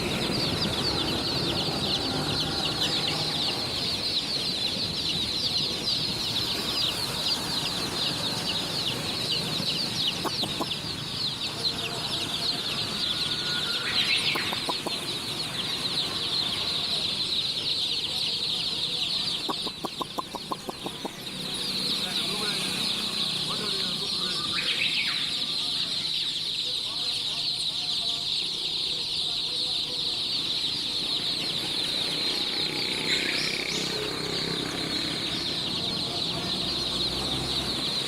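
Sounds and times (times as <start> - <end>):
chicks peeping: 0.0 - 38.0
rapid clucking: 10.1 - 10.8, 14.3 - 15.1, 19.4 - 21.2.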